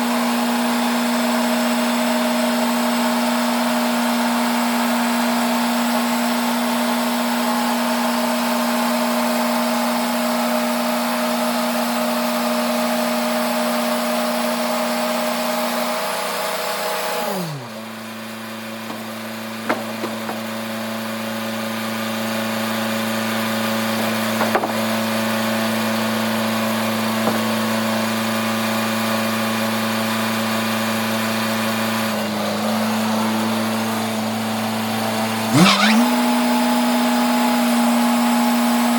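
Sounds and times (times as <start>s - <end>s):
sawmill machinery humming: 0.0s - 38.9s
sharp knocks: 18.9s - 20.7s, 24.4s - 24.8s, 27.2s - 27.8s.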